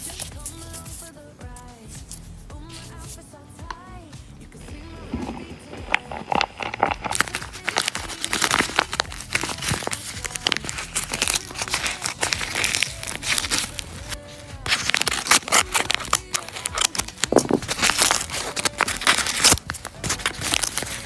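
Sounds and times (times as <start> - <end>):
packaging crinkling and rustling: 5.0 - 21.0
packaging tearing: 5.0 - 21.0.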